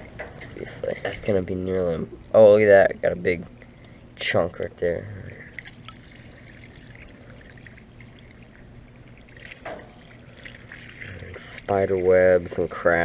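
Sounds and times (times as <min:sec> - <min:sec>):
water trickling: 0:00.0 - 0:13.0
hose water spraying on metal unit: 0:05.8 - 0:13.0.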